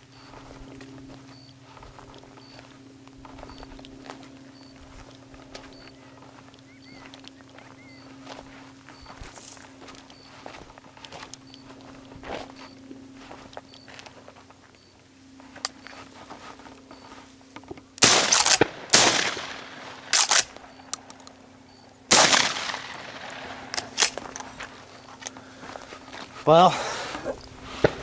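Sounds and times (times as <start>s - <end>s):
shotgun blasts with echo: 18.0s - 20.5s, 22.1s - 24.1s.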